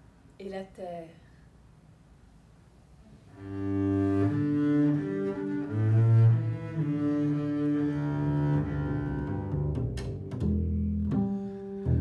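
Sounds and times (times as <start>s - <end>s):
bowed double bass: 3.3s - 12.0s.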